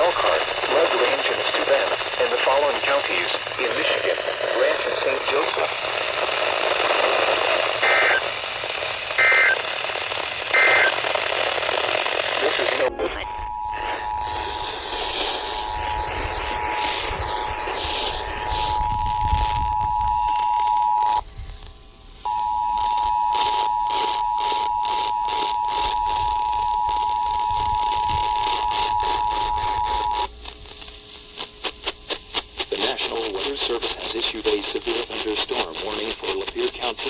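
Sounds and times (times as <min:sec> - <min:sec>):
radio static: 0:00.0 - 0:30.6, 0:31.3 - 0:37.0.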